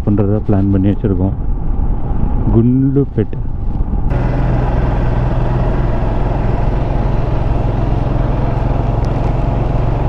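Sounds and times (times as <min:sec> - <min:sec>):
wind and road noise: 0:00.0 - 0:10.0
motorcycle engine running: 0:04.1 - 0:10.0.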